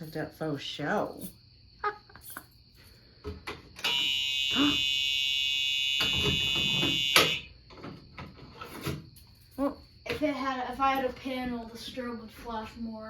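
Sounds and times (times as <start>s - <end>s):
fire alarm horn tone: 3.8s - 7.5s.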